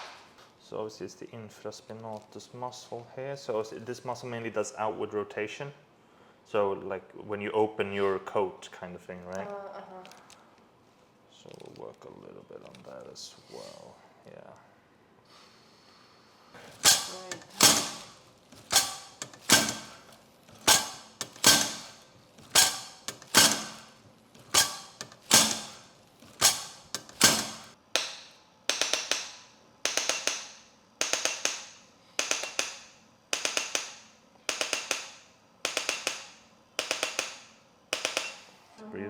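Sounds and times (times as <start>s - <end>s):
adjusting instrument clicking: 16.7s - 38.5s.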